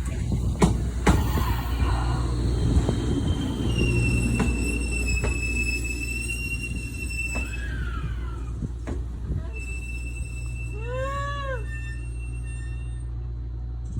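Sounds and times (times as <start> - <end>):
electric train rumbling: 0.0 - 13.9
high-pitched metallic squeal: 1.2 - 13.3.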